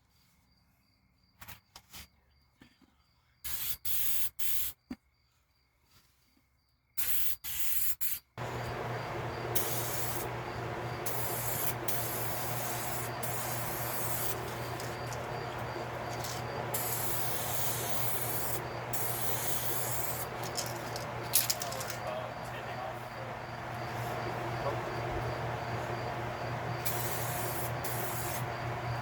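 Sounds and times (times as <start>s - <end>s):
aerosol can spraying: 3.5s - 4.7s, 7.0s - 22.1s, 26.8s - 29.0s.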